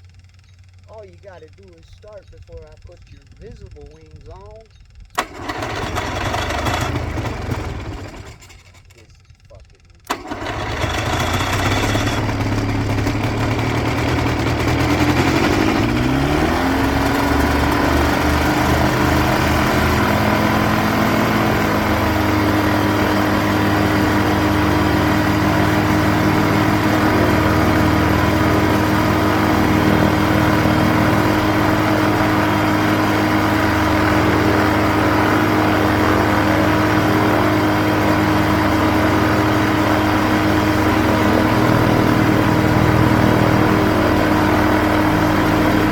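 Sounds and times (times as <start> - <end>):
two-stroke aircraft engine running: 0.0 - 45.9.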